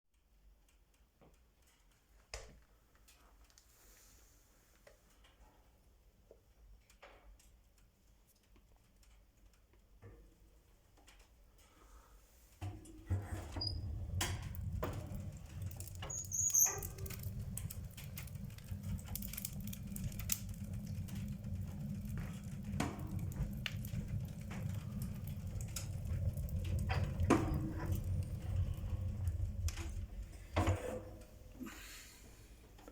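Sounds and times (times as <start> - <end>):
wood fire rumbling: 4.6 - 32.9
fire crackling: 11.0 - 32.9.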